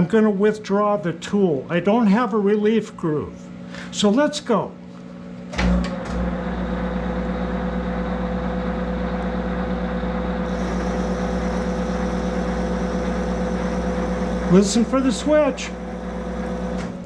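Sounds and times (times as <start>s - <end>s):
lathe humming and whining: 5.9s - 17.0s.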